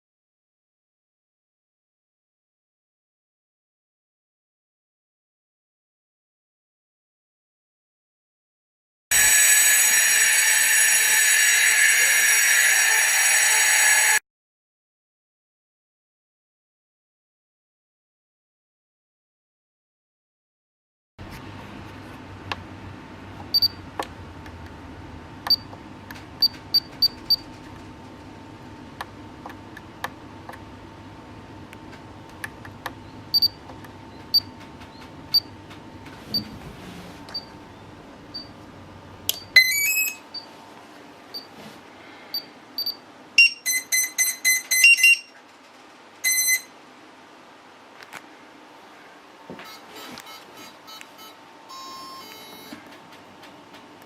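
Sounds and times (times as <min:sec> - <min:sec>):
short high electronic beeps: 0:39.4 - 0:40.2, 0:42.8 - 0:45.3, 0:46.2 - 0:46.7.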